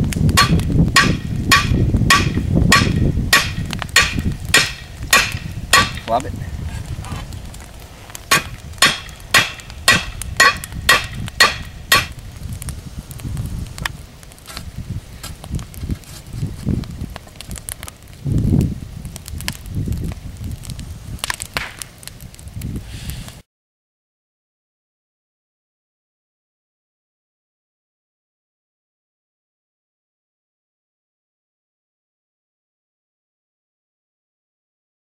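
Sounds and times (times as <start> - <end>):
hammer striking steel: 0.4 - 6.2, 8.3 - 12.2.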